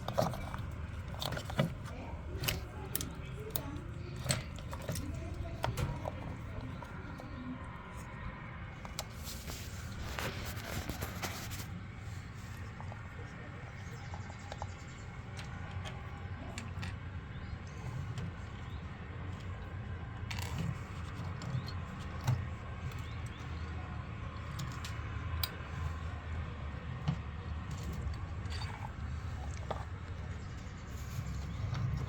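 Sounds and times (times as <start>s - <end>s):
clicks and light knocks: 0.0s - 11.7s
washing machine humming: 0.0s - 32.0s.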